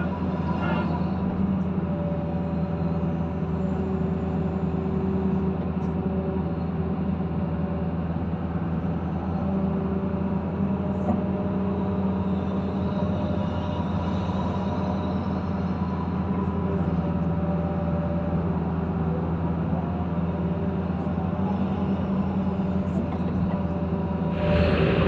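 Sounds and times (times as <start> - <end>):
faint higher engine tone: 24.3 - 25.0.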